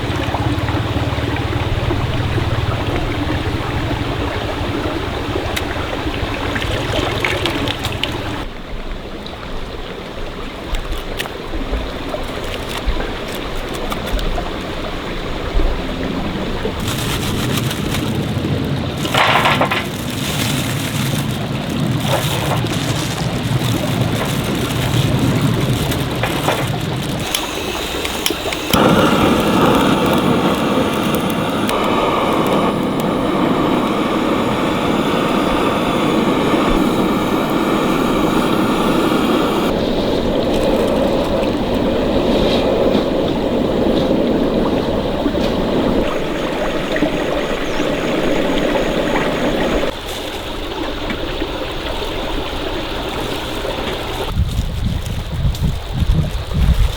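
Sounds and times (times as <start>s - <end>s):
stream water rushing: 0.0s - 54.3s.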